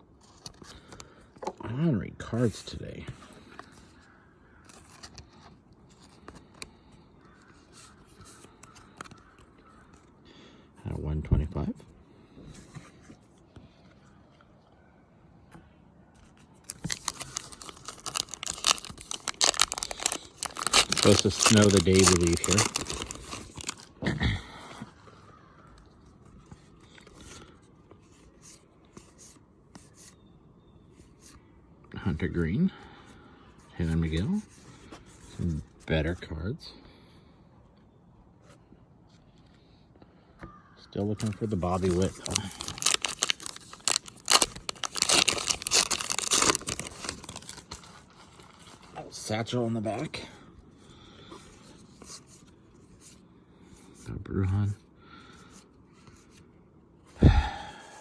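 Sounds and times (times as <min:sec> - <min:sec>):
trading cards rustling: 0:02.4 - 0:10.2, 0:16.2 - 0:30.2, 0:41.0 - 0:49.3.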